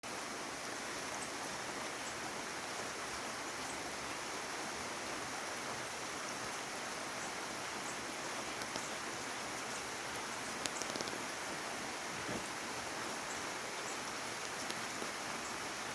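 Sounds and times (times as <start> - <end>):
light rain hiss: 0.0 - 15.9
faint raindrop ticks: 8.5 - 9.0, 9.6 - 11.3, 14.4 - 15.2.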